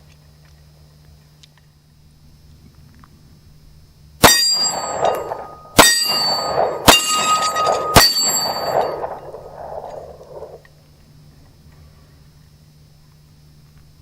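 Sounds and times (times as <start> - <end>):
gunshot echo: 4.2 - 10.6
metal target clang: 4.2 - 10.6
pistol shots: 4.2 - 10.6.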